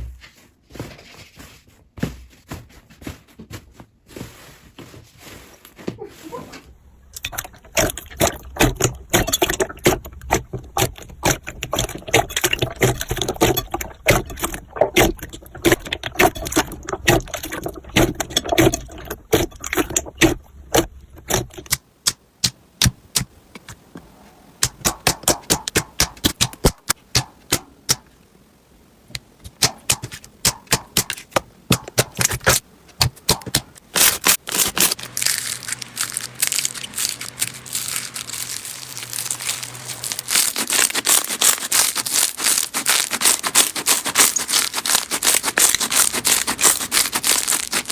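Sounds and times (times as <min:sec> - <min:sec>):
slime squishing with clicks and pops: 0:07.1 - 0:23.3.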